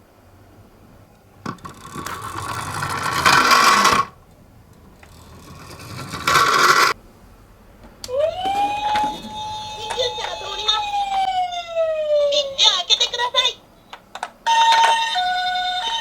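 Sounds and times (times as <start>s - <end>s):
toy car wheels rattling and scraping: 1.4s - 7.0s, 13.9s - 16.0s.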